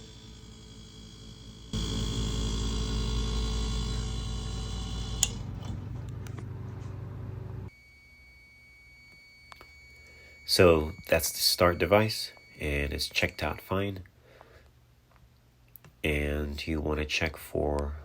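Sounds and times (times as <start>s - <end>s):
refrigerator compressor humming: 0.0s - 13.6s
sharp click: 5.2s - 6.4s.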